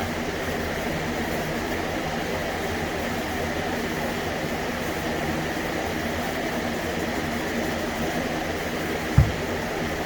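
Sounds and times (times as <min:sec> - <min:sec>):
dull low thump: 0:09.2 - 0:09.6.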